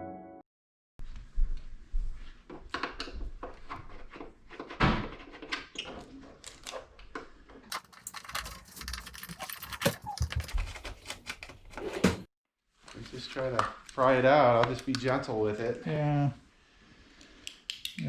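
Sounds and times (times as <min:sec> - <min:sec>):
hard objects clicking and knocking: 0:07.7 - 0:12.2.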